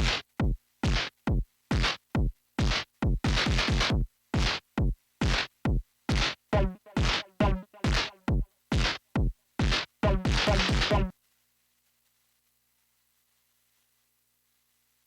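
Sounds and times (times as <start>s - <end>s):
synthesizer percussive hits: 6.6s - 8.4s, 10.0s - 11.1s.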